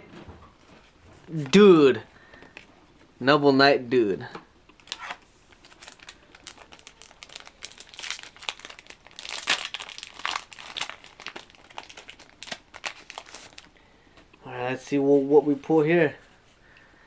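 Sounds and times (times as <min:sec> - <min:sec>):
foil wrapper crinkling: 0:04.8 - 0:13.7.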